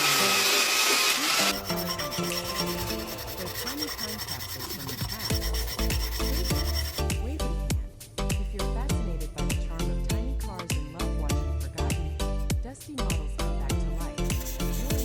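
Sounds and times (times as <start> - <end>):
file rasping on model part: 0.0 - 7.1, 14.2 - 15.0
steady ticking beat: 1.5 - 7.2, 14.2 - 15.0.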